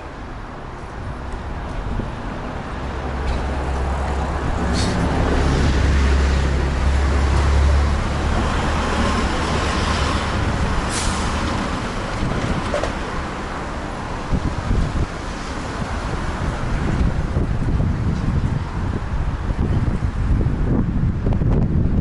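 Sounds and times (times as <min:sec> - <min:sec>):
heavy road vehicle rumbling: 0:00.0 - 0:22.0
short hisses: 0:04.7 - 0:05.1, 0:10.9 - 0:11.4.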